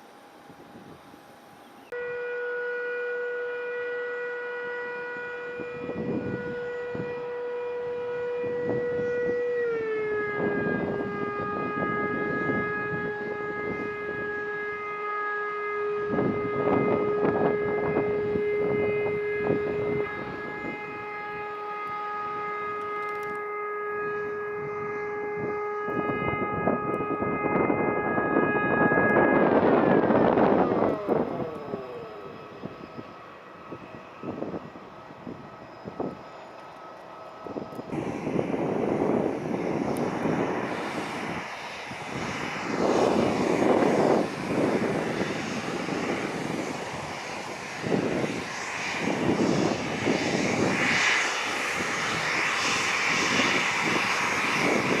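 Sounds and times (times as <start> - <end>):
jet engine whine: 0.0 - 55.0
gusty rush: 25.4 - 36.3, 37.3 - 55.0.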